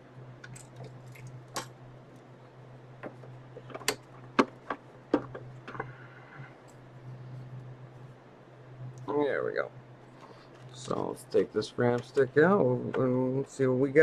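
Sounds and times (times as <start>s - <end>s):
steady low hum: 0.0s - 14.0s
clicks and knocks of computer parts: 0.4s - 1.8s, 3.0s - 5.9s.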